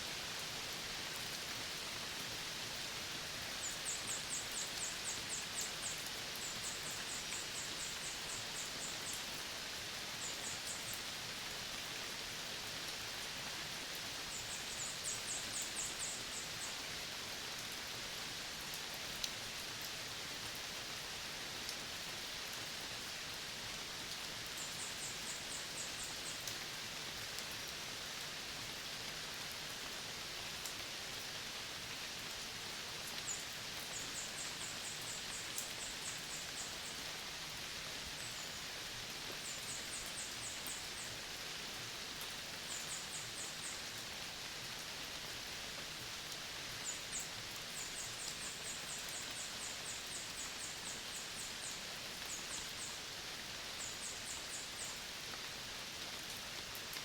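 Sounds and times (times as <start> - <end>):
dense forest hiss: 0.0 - 57.0.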